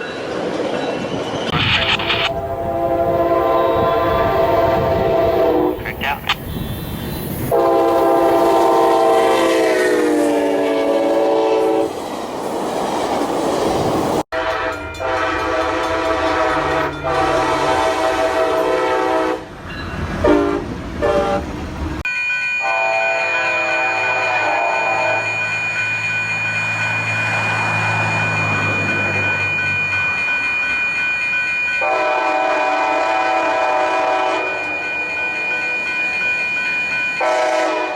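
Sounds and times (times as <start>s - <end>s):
train passing: 0.0s - 37.9s
locomotive air horn: 2.2s - 5.9s, 7.5s - 11.9s, 14.3s - 19.5s, 20.2s - 21.4s, 22.6s - 25.3s, 31.8s - 34.7s, 37.2s - 37.9s
steady high tone: 22.1s - 32.1s, 34.4s - 37.5s.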